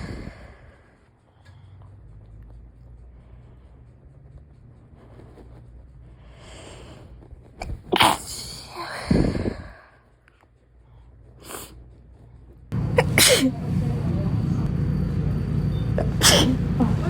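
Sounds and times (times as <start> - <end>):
breathy intake of breath: 0.0 - 1.6
steady background hum: 0.0 - 17.0
person sneezing: 7.6 - 8.7, 13.0 - 13.6, 16.2 - 16.6.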